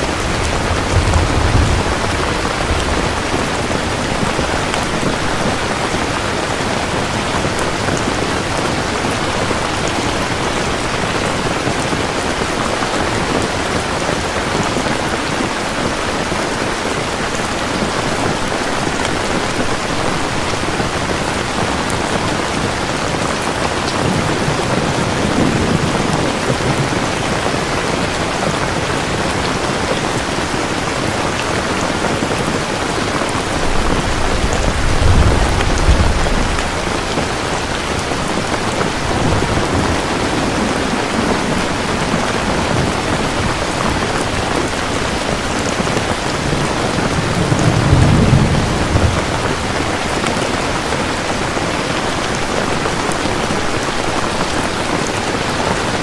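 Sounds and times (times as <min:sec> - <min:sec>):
low thunder rumbling: 0:00.0 - 0:11.9, 0:32.5 - 0:50.4
heavy rain: 0:00.0 - 0:56.0.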